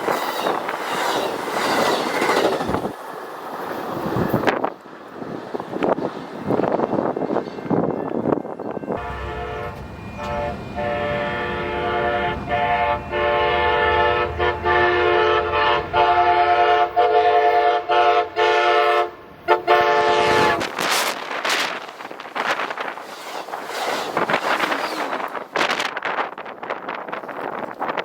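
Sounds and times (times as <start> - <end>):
rush of wind noise: 0.0 - 9.0, 20.2 - 28.0
low rumble of moving train: 0.0 - 28.0
train air horn blasts: 8.7 - 20.8.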